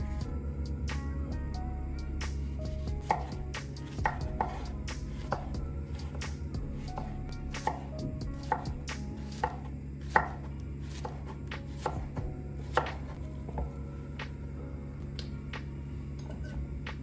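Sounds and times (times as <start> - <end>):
steady low hum: 0.0 - 17.0
knife chopping on cutting board: 2.8 - 13.7.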